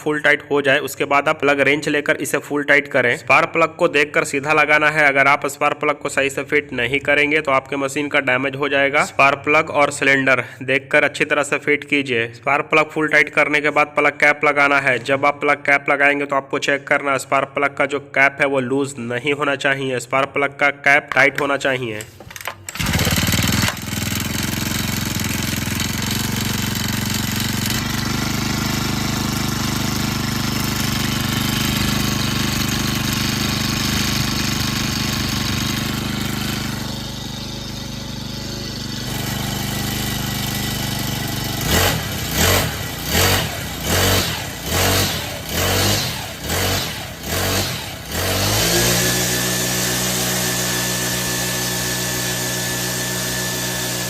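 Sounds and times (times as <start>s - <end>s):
brush cutter engine idling: 22.0s - 54.0s
brush cutter engine revving: 22.2s - 54.0s.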